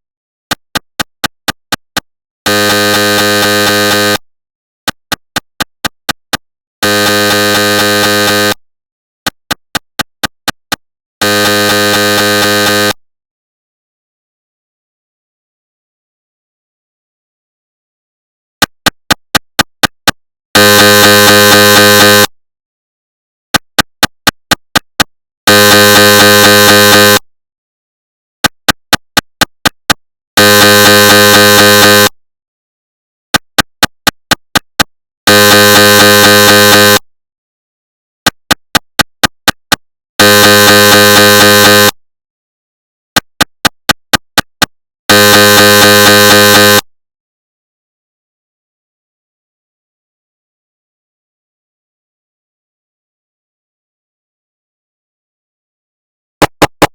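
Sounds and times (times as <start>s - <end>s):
mri scanner buzzing tone: 1.5s - 4.2s, 4.9s - 8.6s, 11.2s - 13.0s, 20.6s - 22.3s, 25.5s - 27.2s, 28.4s - 32.2s, 35.3s - 37.0s, 38.5s - 42.0s, 43.2s - 46.9s
mri scanner knocks: 56.4s - 56.9s.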